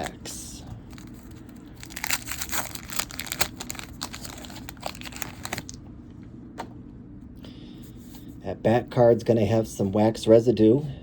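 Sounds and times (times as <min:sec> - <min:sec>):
paper wrapper crinkling and tearing: 0:00.8 - 0:05.8.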